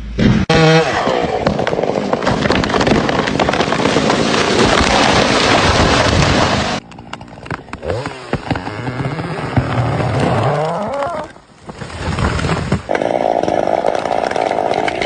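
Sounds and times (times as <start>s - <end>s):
dense crackling noise: 1.1s - 15.0s
small engine revving: 7.8s - 11.0s.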